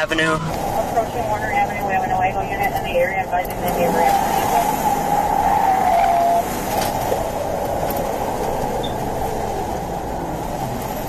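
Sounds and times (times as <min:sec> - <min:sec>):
steady radio tone: 0:00.0 - 0:04.7.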